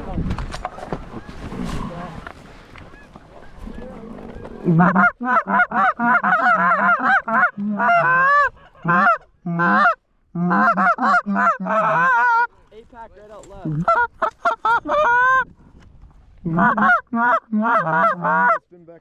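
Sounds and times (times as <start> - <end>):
goose call honks: 3.0 - 12.5, 16.5 - 18.6.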